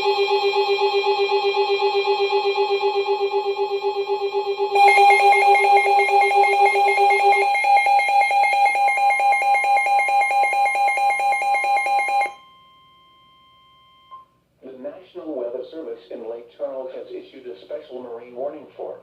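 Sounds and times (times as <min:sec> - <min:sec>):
pulsing emergency alert tone: 0:00.0 - 0:12.4.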